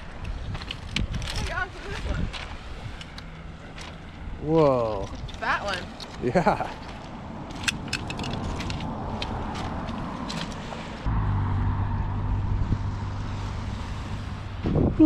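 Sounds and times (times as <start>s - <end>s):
road and engine noise: 0.0s - 15.0s
deep loud rumble: 11.0s - 15.0s.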